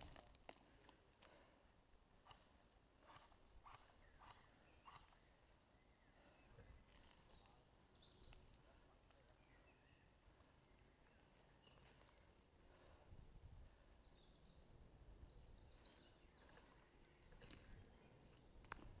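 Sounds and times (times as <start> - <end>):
faint bird chirps: 3.1 - 12.4, 13.8 - 18.5.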